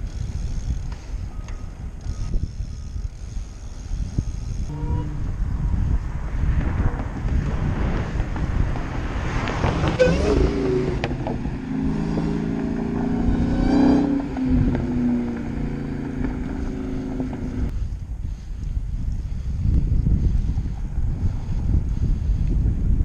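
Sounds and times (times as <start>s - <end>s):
wind rumbling over microphone: 0.0s - 23.0s
motor vehicle passing: 2.0s - 17.8s.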